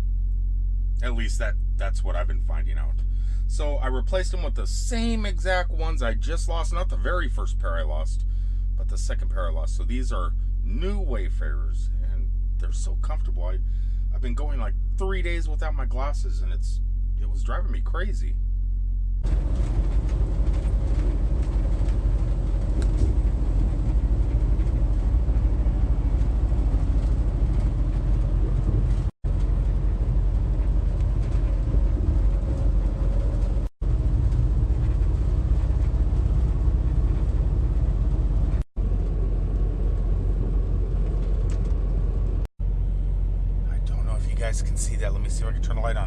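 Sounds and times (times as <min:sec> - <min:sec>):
vehicle road and engine rumble: 0:19.2 - 0:46.0.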